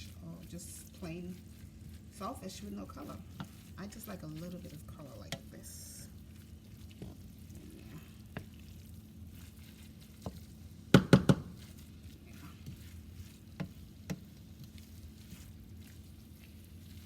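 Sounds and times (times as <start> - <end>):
sauce being stirred in pan: 0.0 - 17.0
utensil clicking against pan: 10.9 - 11.5.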